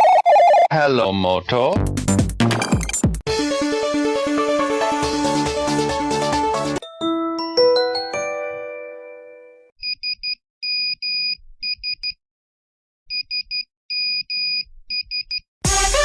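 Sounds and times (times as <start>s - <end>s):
chiming ringtone melody: 6.8s - 9.7s.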